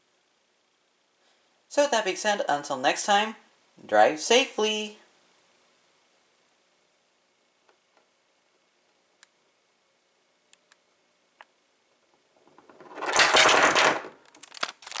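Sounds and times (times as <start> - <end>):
metal padlock rattling: 12.6 - 15.0.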